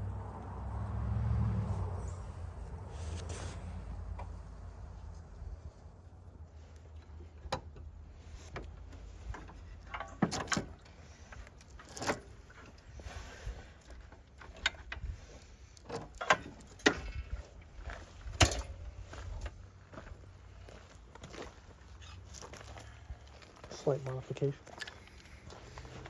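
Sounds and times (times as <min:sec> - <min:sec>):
metal tools clanking: 0:09.2 - 0:12.9.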